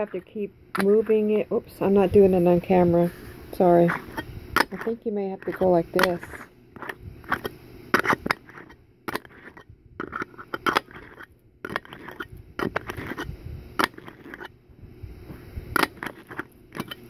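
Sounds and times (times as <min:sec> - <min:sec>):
herb grinder scraping and crunching: 0:03.1 - 0:14.6, 0:15.7 - 0:17.0.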